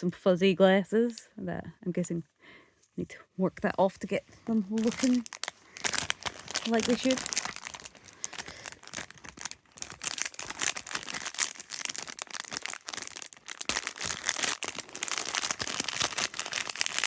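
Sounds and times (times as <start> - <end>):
packaging crinkling: 4.5 - 17.0.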